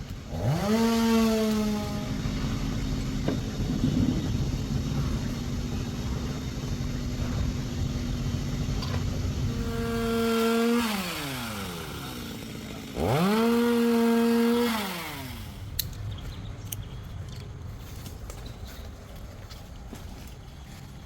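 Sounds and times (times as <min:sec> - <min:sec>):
chainsaw revving: 0:00.0 - 0:15.7
sharp clicks: 0:15.7 - 0:17.5.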